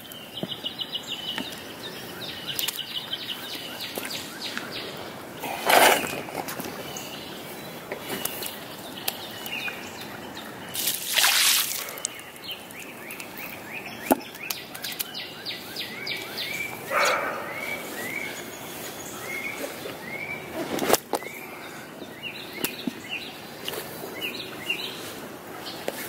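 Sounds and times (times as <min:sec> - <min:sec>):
creek water: 0:00.0 - 0:26.0
small birds chirping: 0:00.0 - 0:26.0
splashes: 0:10.7 - 0:12.2.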